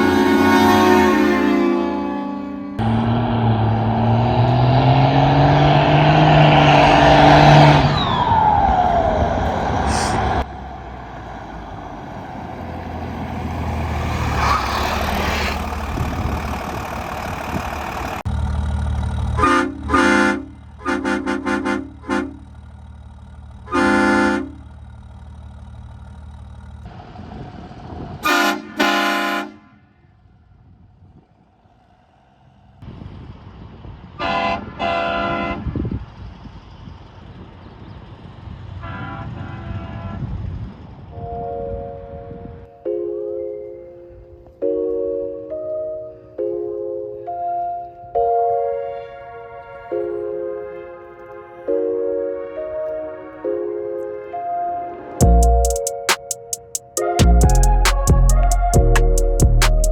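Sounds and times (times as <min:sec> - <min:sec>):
air train horn blasts: 0:00.0 - 0:02.8, 0:19.4 - 0:22.4, 0:23.7 - 0:24.6, 0:28.2 - 0:29.8, 0:34.2 - 0:35.8, 0:38.8 - 0:40.3
truck engine running: 0:02.8 - 0:28.2, 0:55.2 - 0:59.9.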